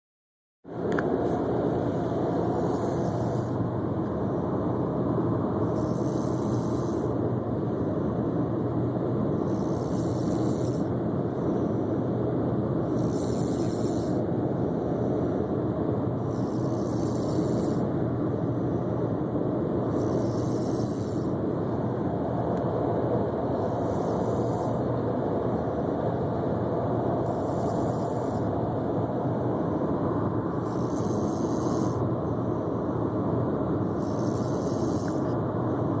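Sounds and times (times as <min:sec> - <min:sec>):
steady low rumble: 0:00.7 - 0:36.0
girl snoring: 0:01.9 - 0:03.6, 0:05.6 - 0:07.2, 0:09.4 - 0:10.9, 0:12.8 - 0:14.3, 0:16.2 - 0:17.9, 0:19.8 - 0:21.4, 0:23.5 - 0:24.9, 0:27.2 - 0:28.5, 0:30.5 - 0:32.0, 0:33.8 - 0:35.4.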